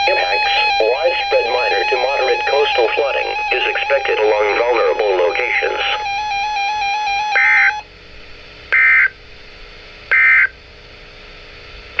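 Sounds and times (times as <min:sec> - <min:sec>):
digital data tone bursts: 0:00.0 - 0:07.8
steady electronic tone: 0:00.0 - 0:07.9.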